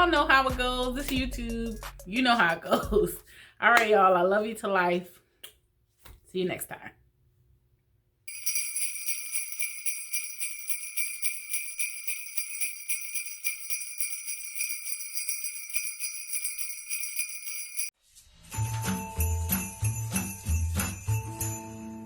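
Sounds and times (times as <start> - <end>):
sleigh bells jingling: 0.0 - 3.0, 8.3 - 22.0.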